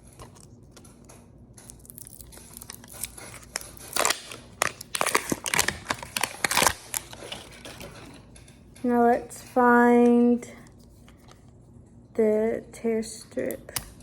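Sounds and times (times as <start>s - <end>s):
plastic wrapping crinkling: 1.6s - 8.3s.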